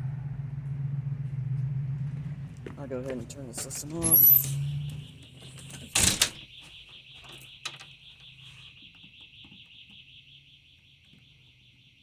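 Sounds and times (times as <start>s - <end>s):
warbling electronic siren: 3.9s - 12.0s.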